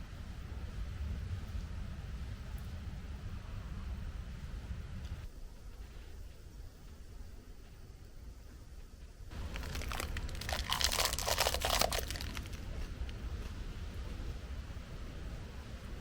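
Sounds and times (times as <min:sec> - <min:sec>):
steady low rumble: 0:00.0 - 0:05.7, 0:09.3 - 0:16.0
crinkly material crackling: 0:09.3 - 0:13.5.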